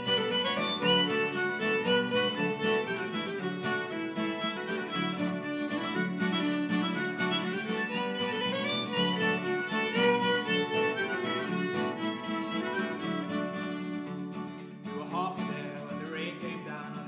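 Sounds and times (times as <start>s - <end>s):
harmonica: 0.0s - 14.7s
strummed acoustic guitar: 0.0s - 17.0s
violin: 0.0s - 17.0s.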